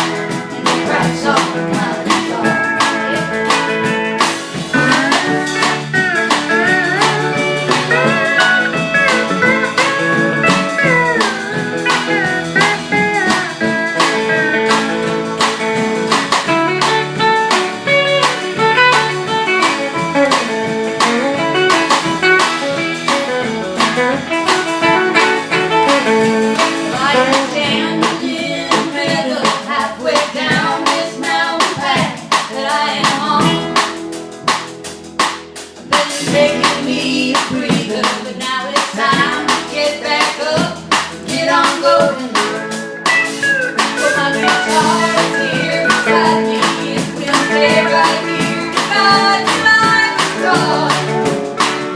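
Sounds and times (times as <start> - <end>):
live country band playing: 0.0 - 51.9
sharp drum hits: 4.6 - 7.1.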